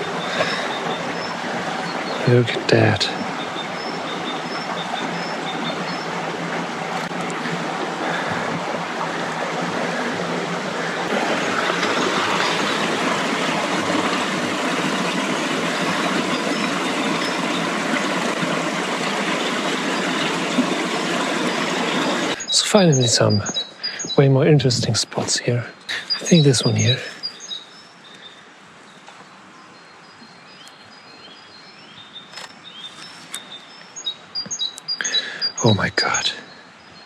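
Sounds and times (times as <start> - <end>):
stream water rushing: 0.0 - 29.5.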